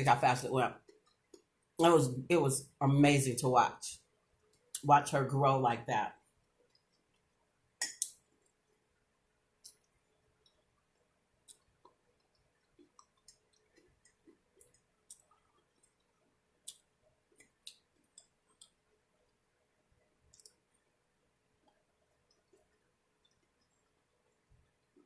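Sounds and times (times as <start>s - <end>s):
person chewing mouth sounds: 0.8s - 1.6s, 9.6s - 20.9s, 21.6s - 24.0s.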